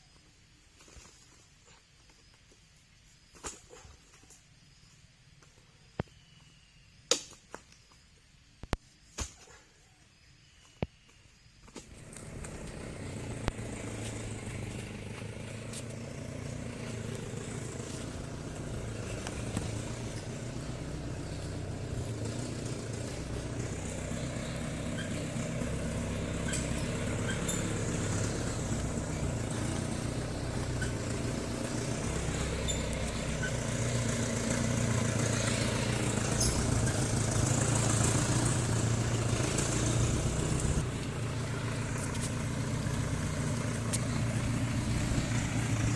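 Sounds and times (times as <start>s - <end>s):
diesel engine driving: 11.9s - 45.9s.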